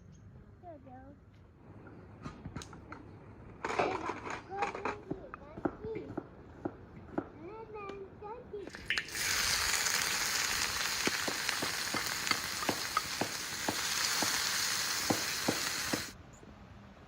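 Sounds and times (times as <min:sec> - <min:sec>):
food sizzling in hot oil: 0:08.7 - 0:16.2
utensil tapping and scraping pan: 0:10.8 - 0:16.2.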